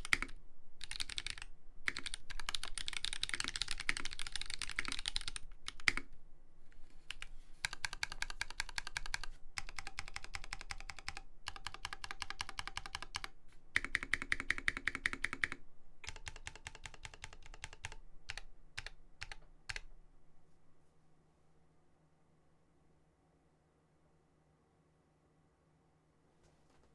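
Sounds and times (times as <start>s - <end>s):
mechanical keyboard typing: 0.0s - 6.2s, 7.0s - 19.9s.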